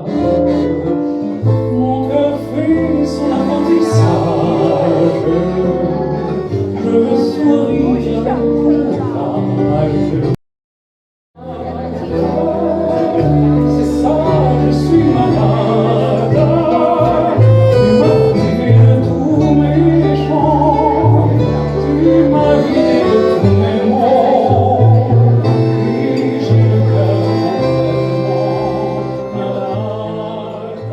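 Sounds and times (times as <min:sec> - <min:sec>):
melody with vibrato: 0:00.0 - 0:10.2, 0:11.6 - 0:30.8
steady bass line: 0:00.0 - 0:10.4, 0:11.4 - 0:30.9.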